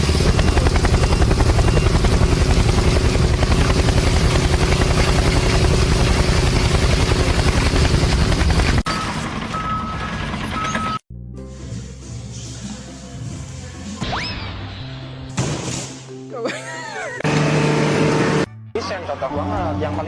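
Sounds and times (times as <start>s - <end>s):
loud machine throbbing: 17.2s - 18.5s.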